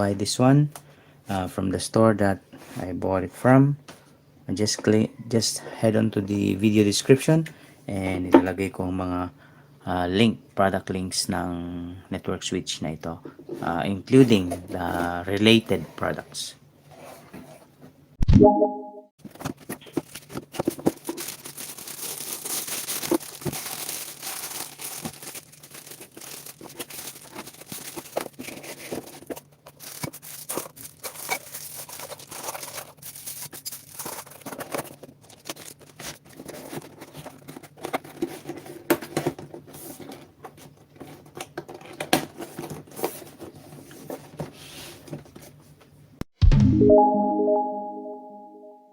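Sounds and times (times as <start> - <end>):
packaging crinkling and rustling: 19.2 - 45.6.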